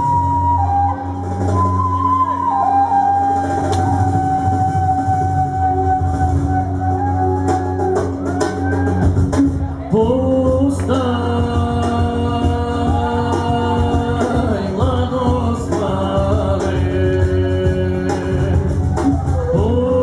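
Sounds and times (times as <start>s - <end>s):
gliding melody line: 0.0s - 8.9s.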